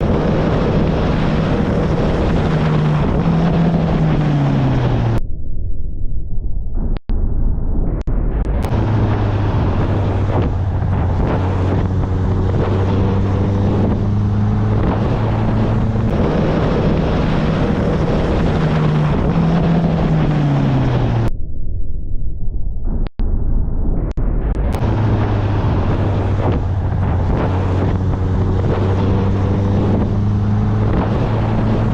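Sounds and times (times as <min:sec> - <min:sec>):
motorcycle engine running: 0:00.0 - 0:05.2, 0:08.6 - 0:21.3, 0:24.6 - 0:31.9
wind noise on microphone: 0:00.0 - 0:05.2, 0:08.6 - 0:21.3, 0:24.6 - 0:31.9.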